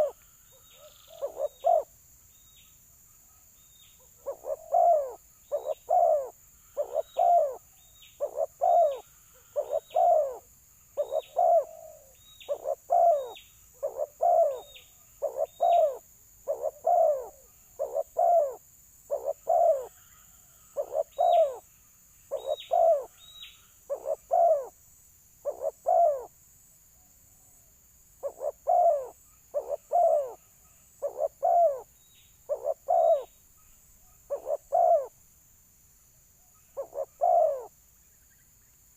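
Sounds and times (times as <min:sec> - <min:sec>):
doves cooing: 0:00.0 - 0:01.9, 0:04.1 - 0:21.6, 0:22.3 - 0:23.2, 0:23.9 - 0:24.7, 0:25.4 - 0:26.3, 0:28.2 - 0:31.9, 0:32.5 - 0:33.3, 0:34.3 - 0:35.1, 0:36.8 - 0:37.7.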